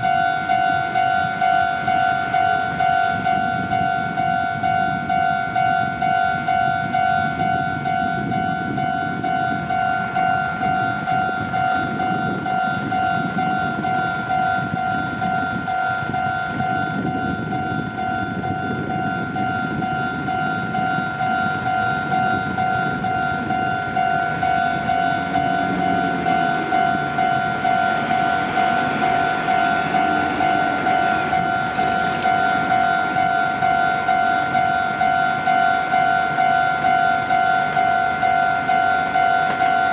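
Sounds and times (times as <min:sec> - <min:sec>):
level-crossing alarm clanging: 0:00.0 - 0:39.9
train rumbling past: 0:00.0 - 0:39.9
rising and falling motor note: 0:24.9 - 0:33.3.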